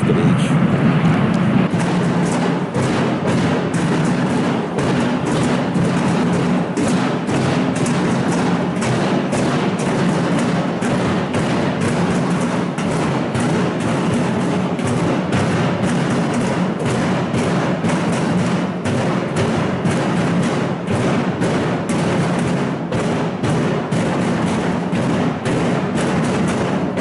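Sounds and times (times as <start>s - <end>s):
low booming: 0.0s - 20.2s
protesters drumming and banging: 0.0s - 27.0s.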